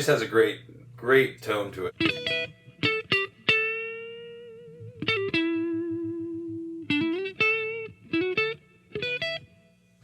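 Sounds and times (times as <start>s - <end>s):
electric guitar notes with vibrato: 1.9s - 9.7s.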